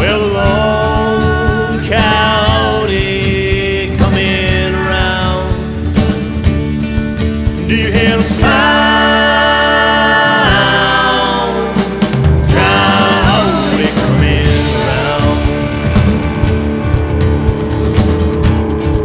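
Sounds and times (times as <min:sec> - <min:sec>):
person singing long notes: 0:00.0 - 0:05.5, 0:07.9 - 0:16.2
country instrumental accompaniment: 0:00.0 - 0:19.0.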